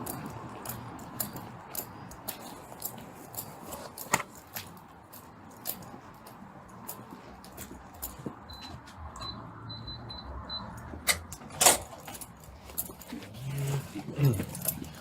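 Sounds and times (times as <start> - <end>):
keys and handcuffs jingling: 11.5 - 15.0.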